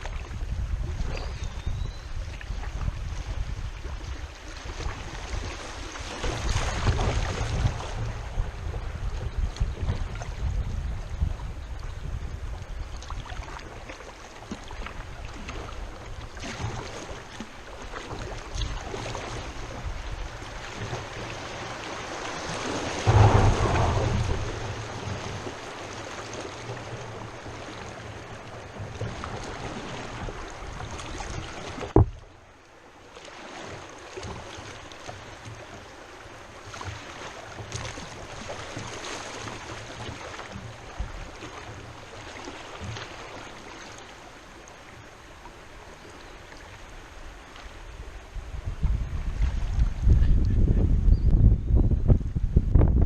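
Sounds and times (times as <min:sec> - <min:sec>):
wind rumbling on microphone: 0:00.0 - 0:32.4, 0:44.4 - 0:53.0
river water flowing: 0:00.0 - 0:50.2
sharp knock: 0:23.1 - 0:24.9.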